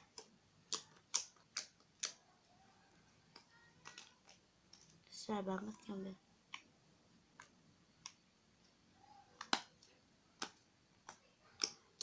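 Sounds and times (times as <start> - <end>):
slime clicking and popping: 0.0 - 2.2, 3.3 - 5.0, 9.3 - 12.0.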